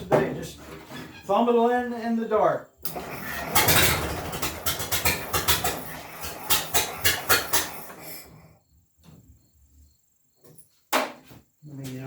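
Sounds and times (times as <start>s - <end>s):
engine firing unevenly with pops: 2.8s - 8.4s.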